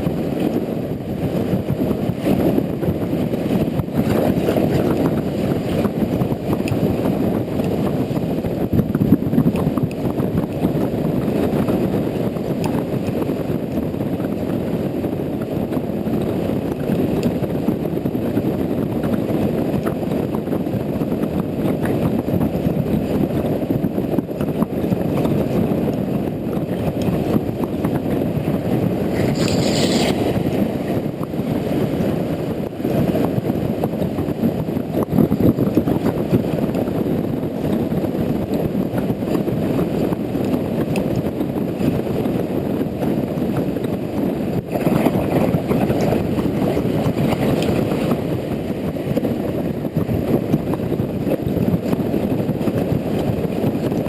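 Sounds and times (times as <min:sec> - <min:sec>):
short hiss: 0:29.2 - 0:30.3.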